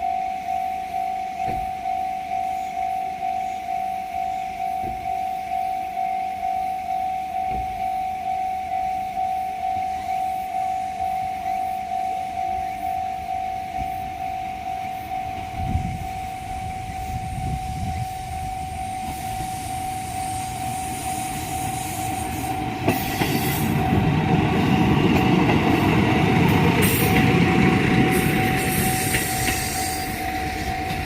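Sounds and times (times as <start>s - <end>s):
diesel railcar engine and wheels: 0.0s - 31.0s
level-crossing alarm ringing: 0.0s - 31.0s.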